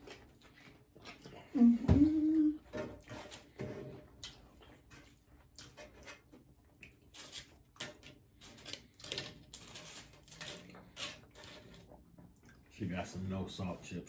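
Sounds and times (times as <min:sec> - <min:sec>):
person chewing crunchy food: 0:03.0 - 0:12.7.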